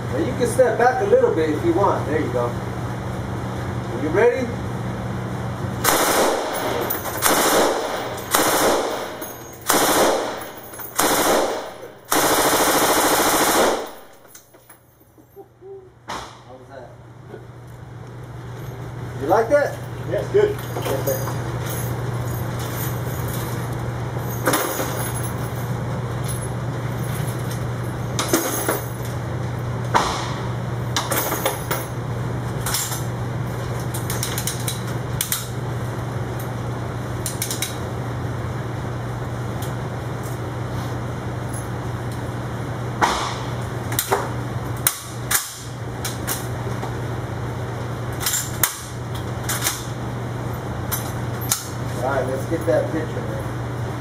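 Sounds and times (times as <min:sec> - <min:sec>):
low hum: 0:04.7 - 0:19.2
sharp knocks and cracks: 0:16.1 - 0:16.5, 0:29.9 - 0:31.9, 0:43.0 - 0:46.5.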